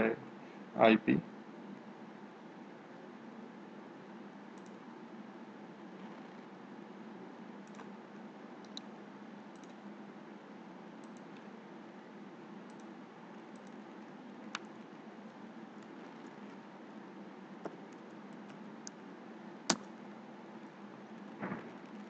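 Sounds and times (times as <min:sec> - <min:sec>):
low background hiss and hum: 0:00.0 - 0:22.0
computer keyboard keystrokes: 0:04.6 - 0:04.8, 0:09.5 - 0:09.8.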